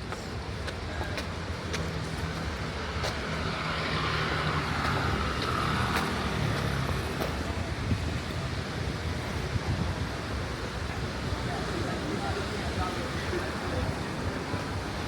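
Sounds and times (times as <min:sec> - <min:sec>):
steady low traffic hum: 0:00.0 - 0:15.0
vehicle passing: 0:01.8 - 0:07.8.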